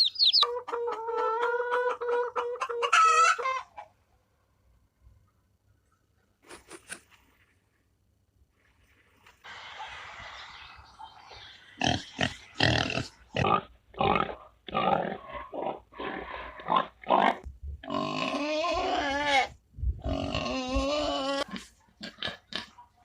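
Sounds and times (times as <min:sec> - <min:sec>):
pig grunting: 0:11.8 - 0:22.8.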